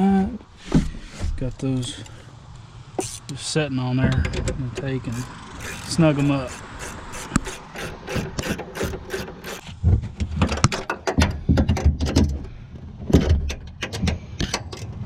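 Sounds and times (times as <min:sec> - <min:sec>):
hand ratchet clicking: 0:04.8 - 0:09.7.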